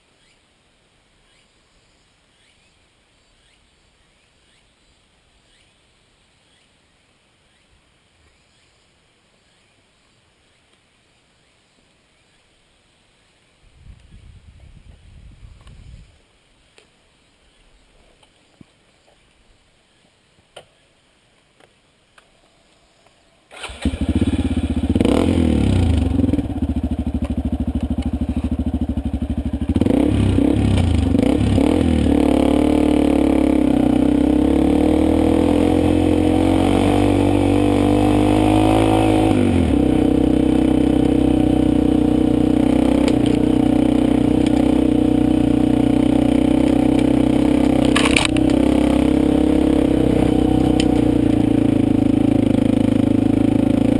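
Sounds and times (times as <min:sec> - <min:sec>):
motorcycle engine revving: 0:23.5 - 0:53.9.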